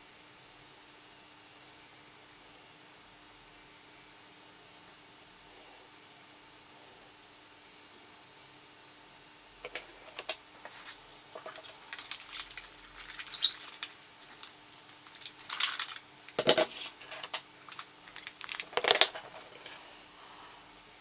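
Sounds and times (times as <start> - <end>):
faint steady hum: 0.0 - 21.0
small hard objects being handled: 9.7 - 19.8.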